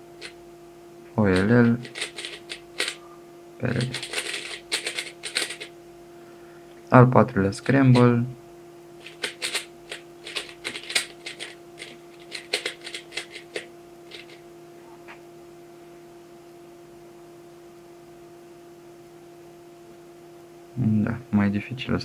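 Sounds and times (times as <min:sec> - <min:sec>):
electrical hum: 0:00.0 - 0:22.0
plastic puzzle cube clicking: 0:01.4 - 0:03.0, 0:03.7 - 0:05.7, 0:09.0 - 0:14.4.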